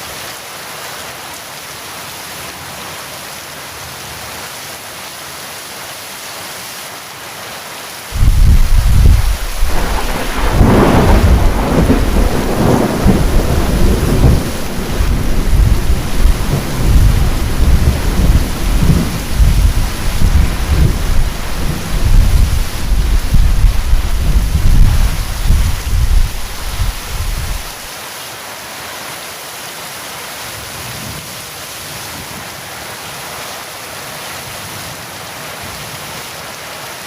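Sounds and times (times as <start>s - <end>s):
heavy rain hiss: 0.0s - 37.0s
thunder rumbling: 8.2s - 27.9s.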